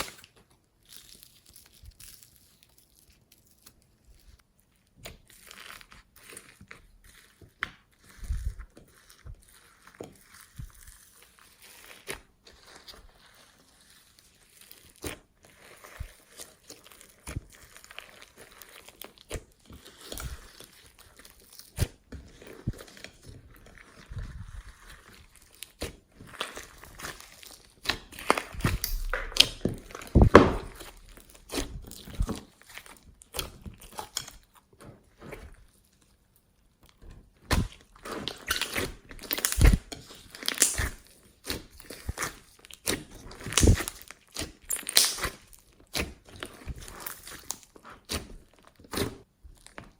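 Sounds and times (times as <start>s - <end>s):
slime squeezed by hand: 38.5s - 45.4s.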